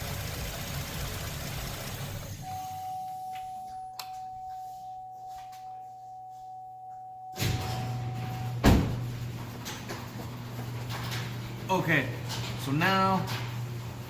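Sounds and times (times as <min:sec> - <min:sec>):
car engine idling: 0:00.0 - 0:02.5.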